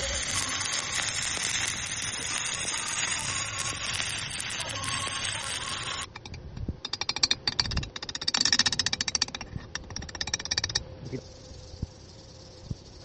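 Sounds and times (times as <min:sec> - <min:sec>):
welding arc crackling: 0:00.0 - 0:06.1.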